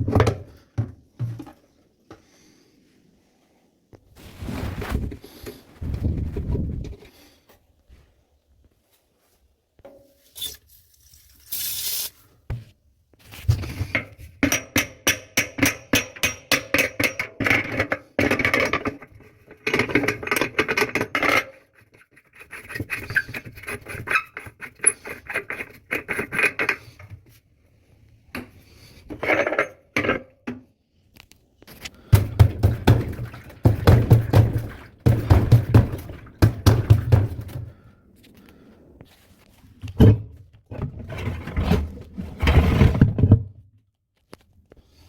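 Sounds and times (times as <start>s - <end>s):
scraping strokes on hard parts: 21.8s - 27.2s.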